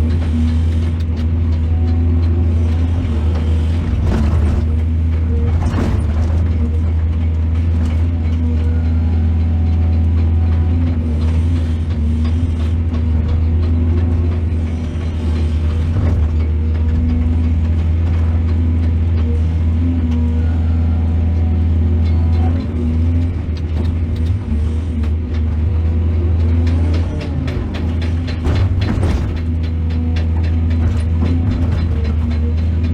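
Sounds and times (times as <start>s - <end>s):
excavator diesel engine droning: 0.0s - 32.9s.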